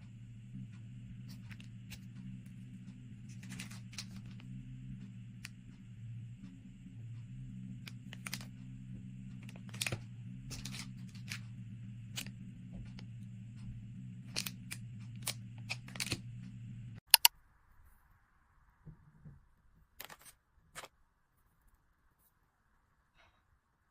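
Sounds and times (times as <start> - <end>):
steady low hum: 0.0 - 17.2
sharp loud clicks: 17.1 - 17.3.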